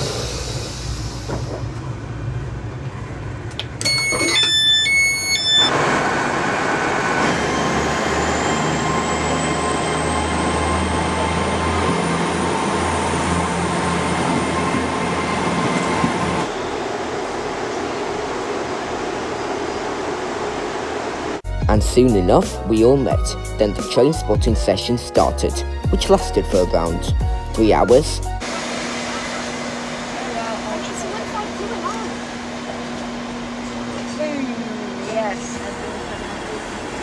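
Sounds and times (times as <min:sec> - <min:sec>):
train rumble: 0:00.0 - 0:03.8, 0:05.7 - 0:37.0.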